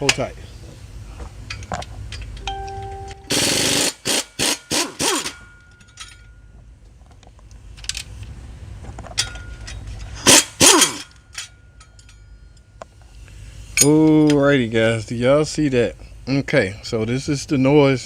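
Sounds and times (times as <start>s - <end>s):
impact wrench bursts: 3.3s - 5.7s, 9.3s - 11.5s.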